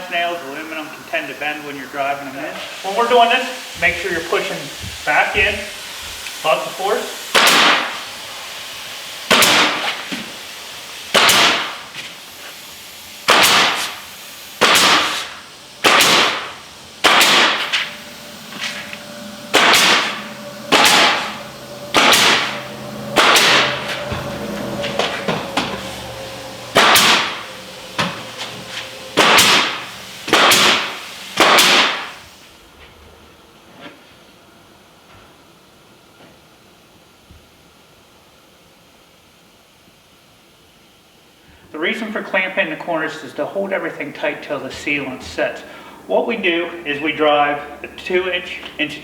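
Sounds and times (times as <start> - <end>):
nails being hammered: 11.2 - 11.7, 13.3 - 13.9, 14.6 - 15.2, 29.2 - 32.0.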